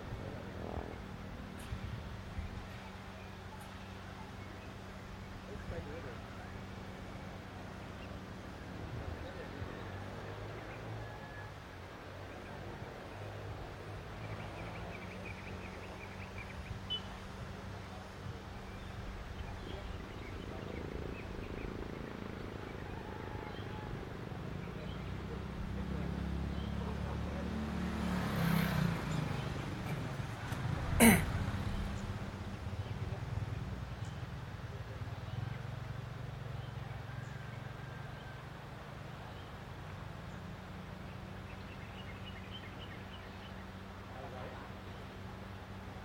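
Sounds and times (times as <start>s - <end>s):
faint bird chirps: 14.9s - 17.2s.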